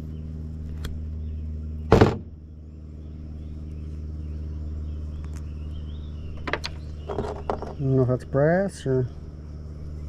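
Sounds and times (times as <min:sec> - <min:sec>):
low mechanical hum: 0:00.0 - 0:10.0
loud brief knock: 0:01.9 - 0:02.3.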